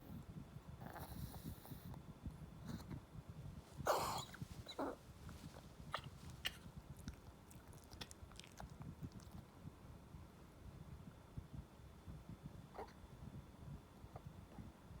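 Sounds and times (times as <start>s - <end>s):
small dog coughing: 3.8s - 5.0s
faint clicks and smacks: 4.3s - 9.6s.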